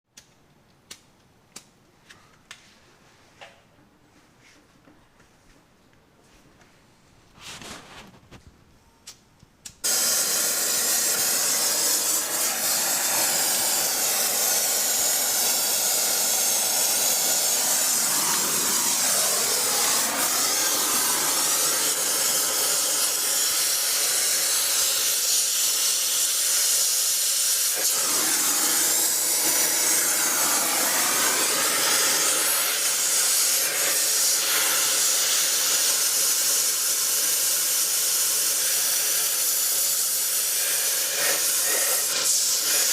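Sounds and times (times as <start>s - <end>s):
loud steady hissing: 9.8s - 42.9s.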